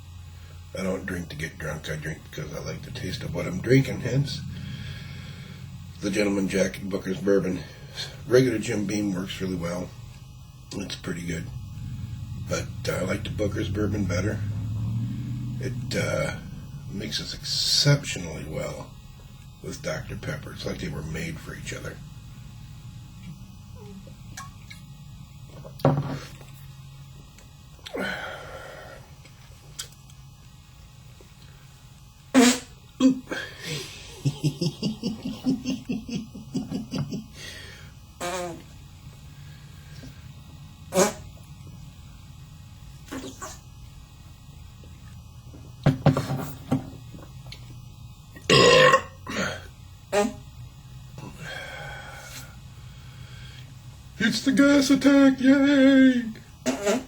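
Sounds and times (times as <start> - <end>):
man burping: 32.4 - 34.4, 48.4 - 50.4
man belching: 33.0 - 33.5, 48.4 - 49.7.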